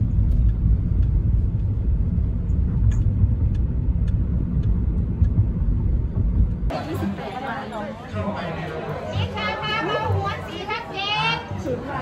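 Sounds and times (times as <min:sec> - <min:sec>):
faint ticks: 0:00.0 - 0:06.7
moving car rumble: 0:00.0 - 0:06.7.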